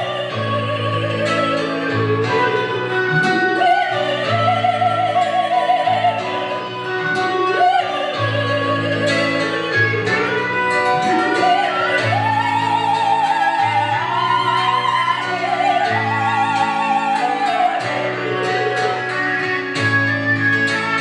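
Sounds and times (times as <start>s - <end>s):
woman singing operatically: 0.0s - 19.5s.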